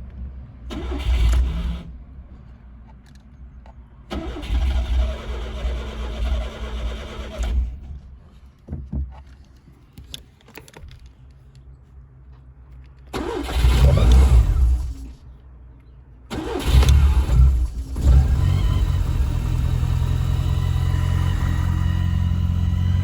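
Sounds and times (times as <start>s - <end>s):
misfiring car engine running: 13.2s - 15.2s, 16.3s - 23.0s.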